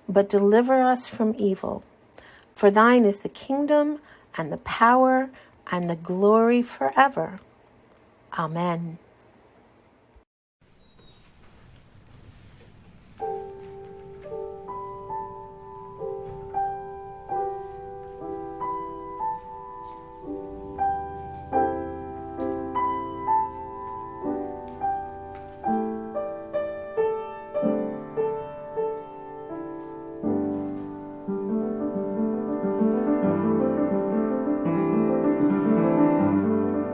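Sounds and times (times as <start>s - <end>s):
slow piano music: 11.8s - 36.9s.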